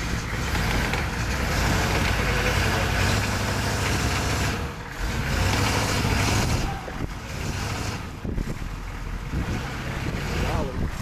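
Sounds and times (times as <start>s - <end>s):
engine rumbling: 0.0s - 11.0s
wind buffeting microphone: 3.4s - 11.0s.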